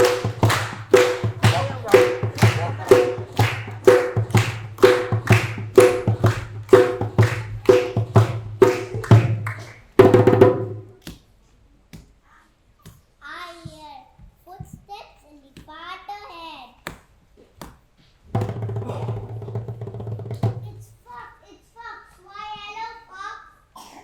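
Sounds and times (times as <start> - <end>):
steady bass: 0.0 - 9.1
woodblock-like percussion: 0.0 - 11.2.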